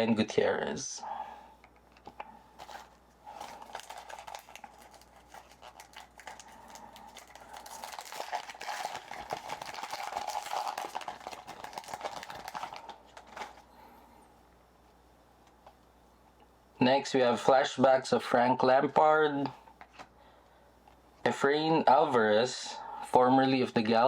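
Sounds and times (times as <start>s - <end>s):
trading cards clicking and rustling: 1.7s - 13.6s.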